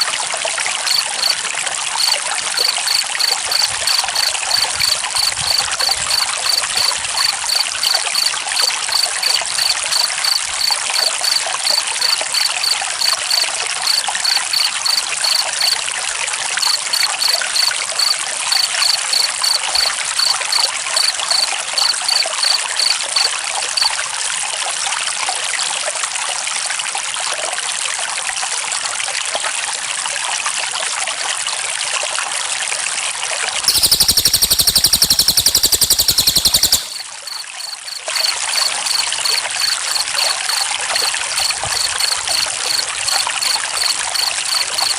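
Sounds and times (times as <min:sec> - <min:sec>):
trickling water: 0:00.0 - 0:44.9
fast cricket trill: 0:00.8 - 0:01.4, 0:02.0 - 0:15.8, 0:16.6 - 0:23.3, 0:33.7 - 0:44.9
cricket chirping: 0:00.8 - 0:15.8, 0:16.6 - 0:23.9, 0:33.7 - 0:44.9.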